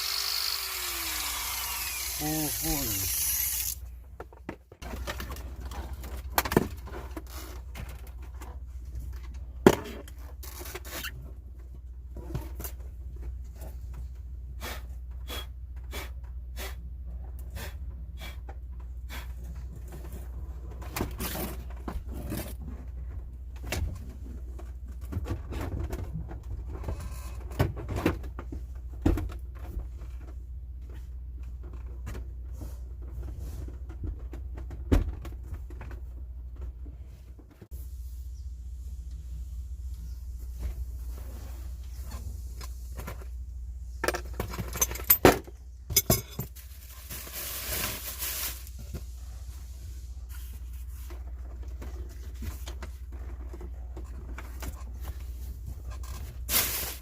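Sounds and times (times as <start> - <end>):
power tool running down: 0.0 - 3.8.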